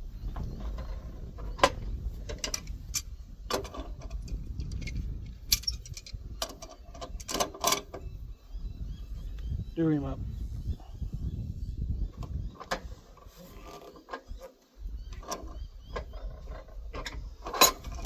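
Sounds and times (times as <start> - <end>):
metal tools clinking and knocking: 2.2 - 7.9.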